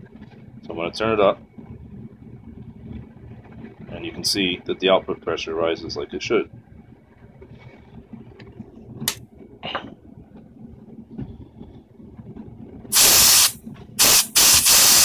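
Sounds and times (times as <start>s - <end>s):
compressed air hissing: 12.9s - 15.0s.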